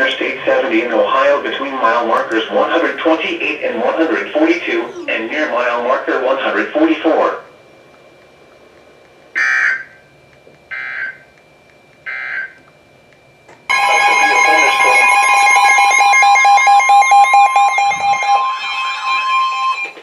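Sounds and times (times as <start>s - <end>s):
warbling electronic alert alarm: 4.3s - 5.5s, 12.1s - 12.6s, 13.7s - 20.0s
digital data screech: 13.7s - 19.9s.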